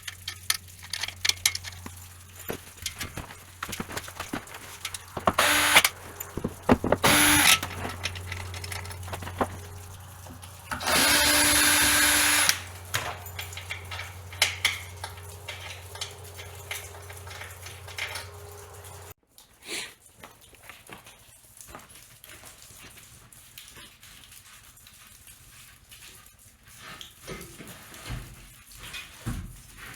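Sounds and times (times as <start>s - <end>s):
handling clicks and knocks: 0.0s - 19.1s
power drill driving screws: 1.9s - 9.9s, 10.7s - 13.1s.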